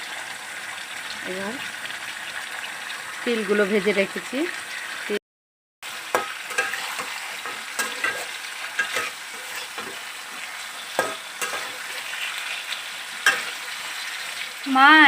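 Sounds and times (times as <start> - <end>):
chicken sizzling in frying pan: 0.0 - 5.2, 5.8 - 15.0
spatula knocking and scraping pan: 6.0 - 12.2, 13.2 - 14.0.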